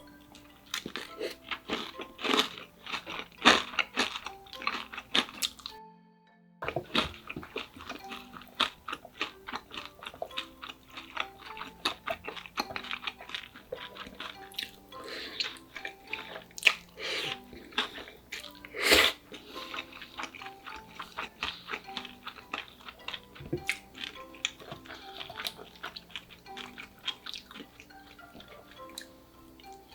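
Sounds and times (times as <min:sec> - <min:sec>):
person chewing: 0:00.0 - 0:05.8, 0:06.6 - 0:29.9
quiet background music: 0:00.0 - 0:29.9
noisy bites and slurps: 0:06.6 - 0:29.8.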